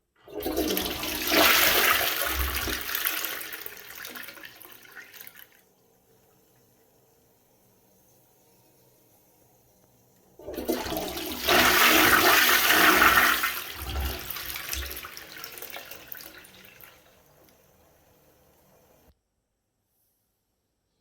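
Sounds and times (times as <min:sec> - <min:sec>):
toilet flushing: 0:00.1 - 0:19.1.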